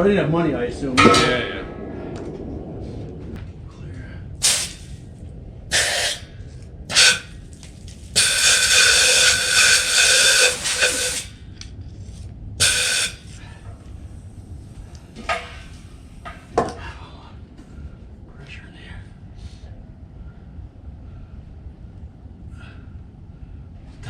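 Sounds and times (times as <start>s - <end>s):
compressed air hissing from nozzle: 4.4s - 4.9s, 5.7s - 6.2s, 6.9s - 7.4s, 8.1s - 11.4s, 12.6s - 13.4s.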